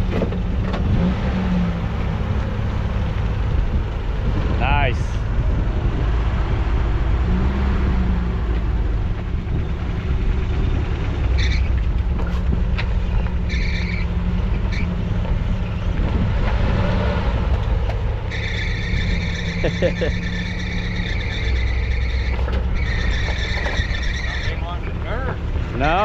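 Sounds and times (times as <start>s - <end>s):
truck engine low rumble: 0.0s - 26.0s
high-pitched squeaks: 11.3s - 11.8s, 13.1s - 15.9s, 18.3s - 25.3s.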